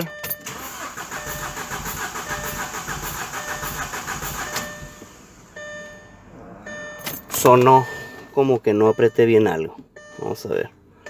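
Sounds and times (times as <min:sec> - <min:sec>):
car engine cranking on starter: 0:00.2 - 0:05.9.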